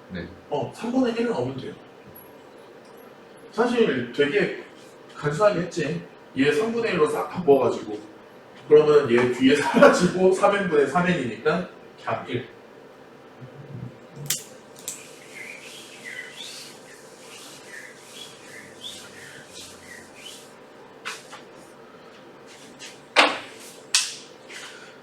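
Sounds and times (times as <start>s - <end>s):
sharp click: 14.2s - 15.0s
squeaky scratchy writing strokes: 15.0s - 21.4s.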